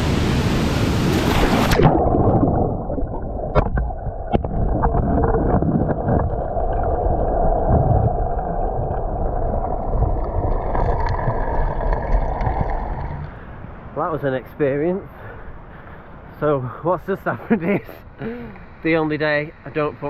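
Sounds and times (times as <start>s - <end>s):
muffled underwater waterfall rumble: 0.0s - 13.9s.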